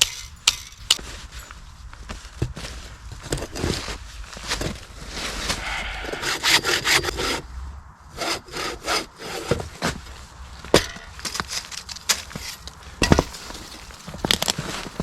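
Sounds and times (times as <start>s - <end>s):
hand saw cutting log: 5.6s - 7.4s, 8.1s - 10.0s
wood cracking: 10.7s - 15.0s.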